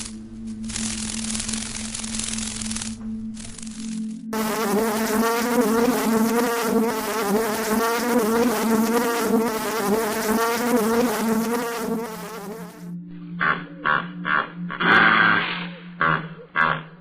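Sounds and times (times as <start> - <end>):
flying insect buzzing: 0.0 - 13.0.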